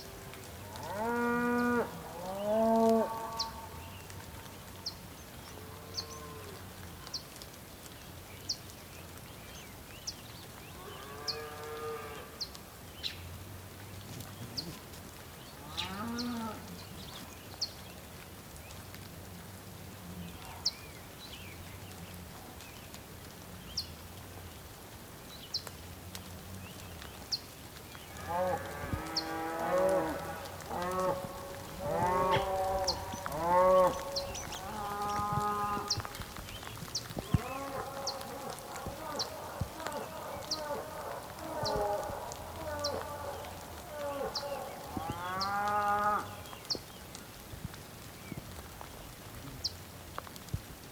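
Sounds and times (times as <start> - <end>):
bulls mooing: 0.6 - 3.6, 28.2 - 36.0, 37.3 - 46.3.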